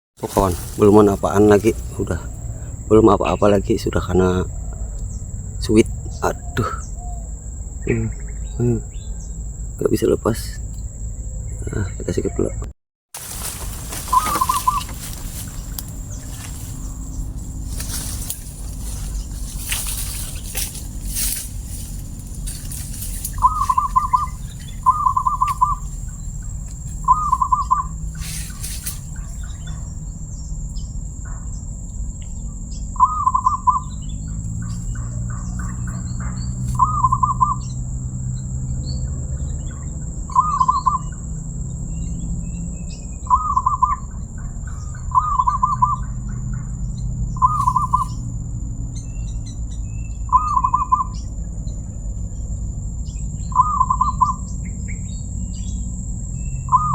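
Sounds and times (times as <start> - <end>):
dove cooing: 0.3 - 9.1, 11.6 - 30.0, 33.0 - 37.6, 40.3 - 41.1, 43.3 - 46.8, 47.4 - 48.2, 50.3 - 51.2, 53.5 - 54.4, 56.7 - 56.9.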